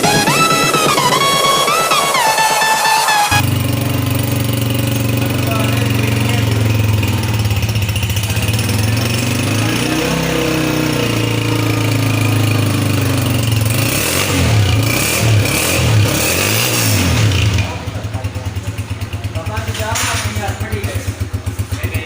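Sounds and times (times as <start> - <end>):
motorcycle engine idling: 3.4 - 22.0.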